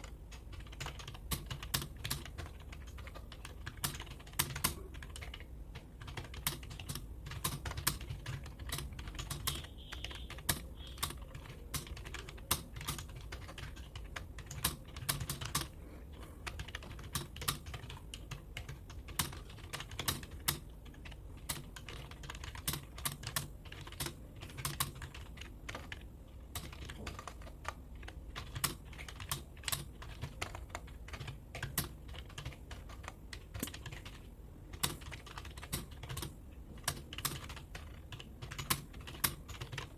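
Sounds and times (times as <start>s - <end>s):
keyboard keys clacking: 6.0s - 15.6s.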